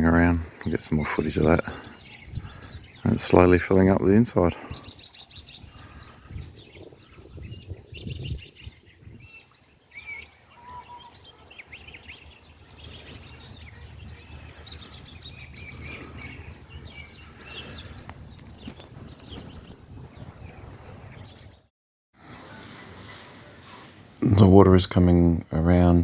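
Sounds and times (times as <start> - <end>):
birds chirping and warbling: 0.0 - 21.7.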